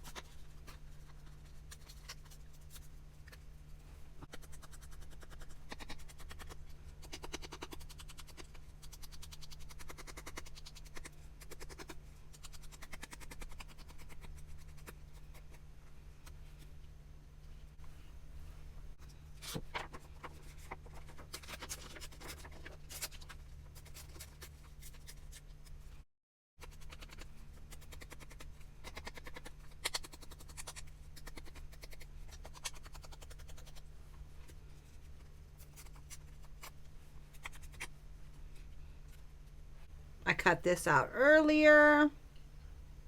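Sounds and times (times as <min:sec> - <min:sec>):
steady low hum: 0:00.0 - 0:43.0
paper rubbing and rustling: 0:19.4 - 0:25.8.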